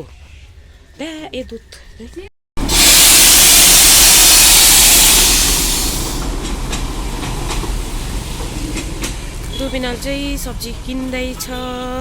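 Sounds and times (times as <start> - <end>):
loud rushing hiss: 2.6 - 9.4.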